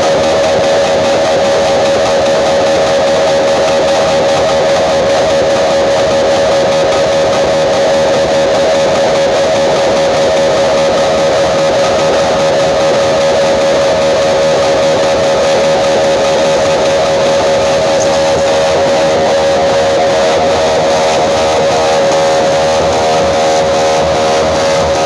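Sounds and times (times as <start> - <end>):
loud guitar music over sound system: 0.0 - 25.0
steady held tone: 14.1 - 23.8.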